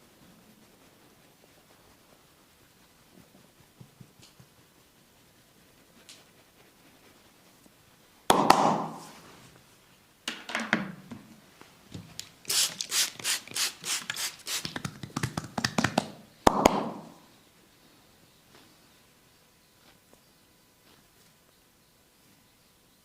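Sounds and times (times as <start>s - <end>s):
hand strikes on body: 8.3s - 9.0s.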